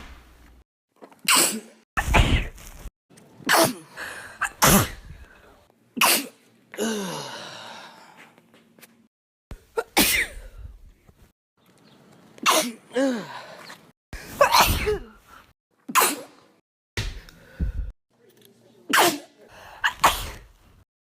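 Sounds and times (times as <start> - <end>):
person sneezing: 1.2 - 2.7, 3.4 - 5.2, 6.0 - 7.3, 9.6 - 10.6, 14.2 - 15.3, 15.9 - 16.4, 18.9 - 20.5.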